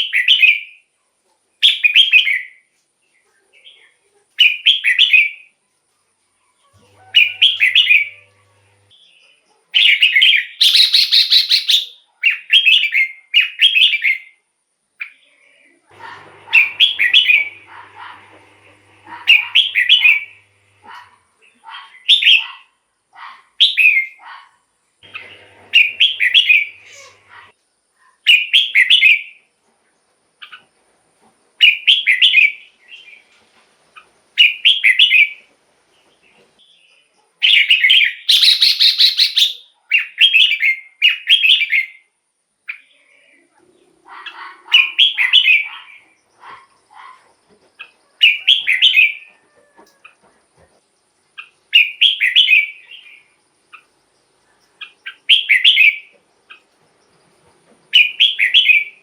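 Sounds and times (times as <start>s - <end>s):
bulbul singing warbled phrases: 19.0s - 22.5s.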